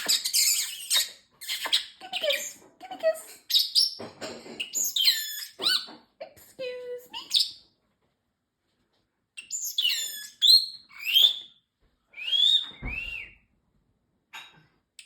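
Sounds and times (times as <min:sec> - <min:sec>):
parrotlet chirping and whistling: 0:00.0 - 0:02.3, 0:04.6 - 0:05.9, 0:09.4 - 0:11.5, 0:12.2 - 0:13.4.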